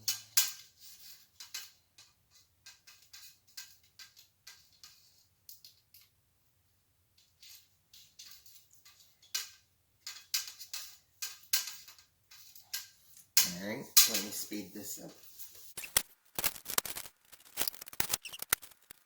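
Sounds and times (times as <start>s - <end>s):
metal spokes clicking: 0.0s - 6.2s, 7.2s - 14.4s.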